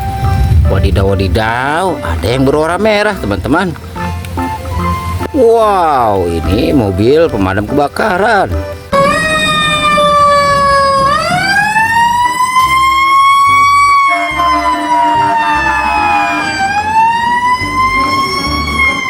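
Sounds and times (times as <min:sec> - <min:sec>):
fire engine siren wailing: 0:04.0 - 0:06.6, 0:08.9 - 0:19.0.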